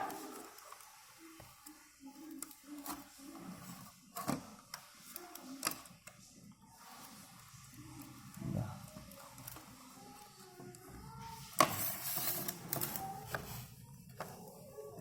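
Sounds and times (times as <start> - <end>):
plastic parts rustling: 0.0 - 15.0
scraping rustle: 11.2 - 14.4.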